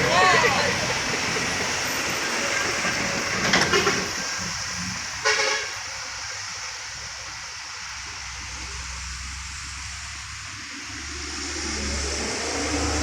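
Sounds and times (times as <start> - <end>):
low engine rumble: 0.0 - 13.0
traffic noise: 0.0 - 13.0
vehicle horn honk: 5.2 - 5.8.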